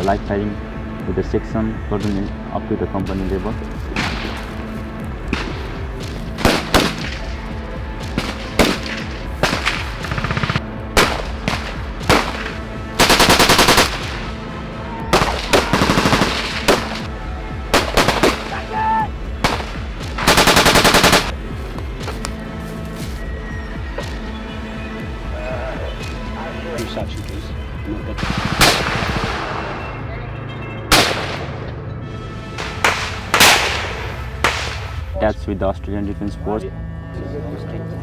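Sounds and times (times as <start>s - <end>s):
rifle shots: 6.4s - 7.3s, 8.2s - 14.4s, 15.2s - 17.1s, 17.8s - 18.6s, 19.4s - 21.4s, 28.2s - 29.8s, 30.9s - 31.7s, 32.6s - 35.0s
automatic gunfire bursts: 8.6s - 11.2s, 12.1s - 14.3s, 15.2s - 17.1s, 17.8s - 18.6s, 19.4s - 21.3s, 28.2s - 29.5s.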